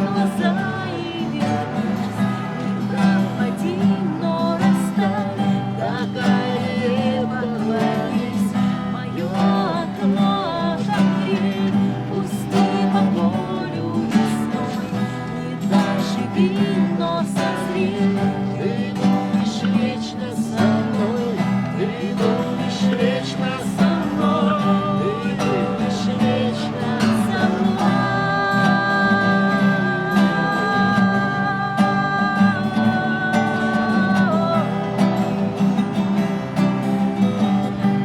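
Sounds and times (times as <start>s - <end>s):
woman singing: 0.0s - 35.3s
acoustic guitar: 0.0s - 38.0s.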